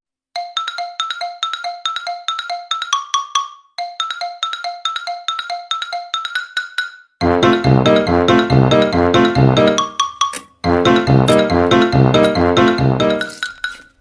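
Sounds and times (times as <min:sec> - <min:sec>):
marimba-like melody: 0:00.4 - 0:13.8
loud music with heavy bass: 0:07.2 - 0:09.8, 0:10.7 - 0:13.2.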